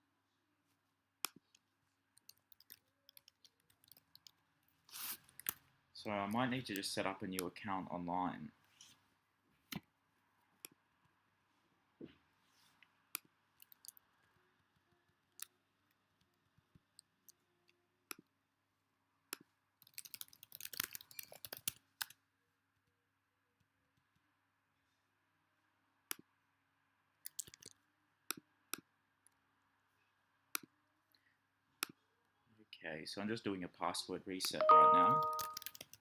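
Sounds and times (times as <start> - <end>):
computer mouse clicks: 2.2 - 4.4
rapid keyboard typing: 19.8 - 21.8, 34.6 - 36.0.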